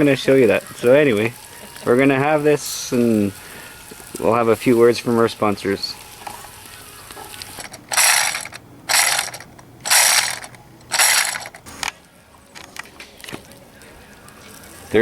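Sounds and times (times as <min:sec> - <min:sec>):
ratchet rasping: 0:07.5 - 0:11.7.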